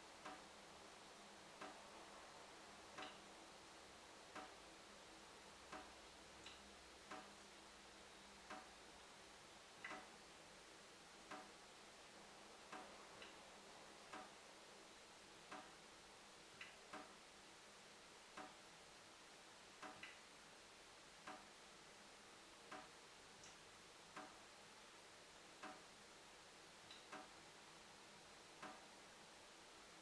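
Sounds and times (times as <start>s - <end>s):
faint steady hiss: 0.0s - 30.0s.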